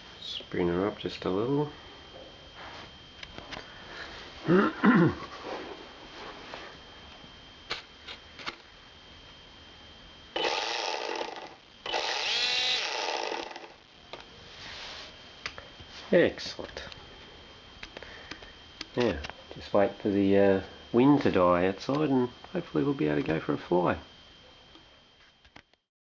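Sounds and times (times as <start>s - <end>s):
electric motor and propeller spinning: 10.3s - 14.3s.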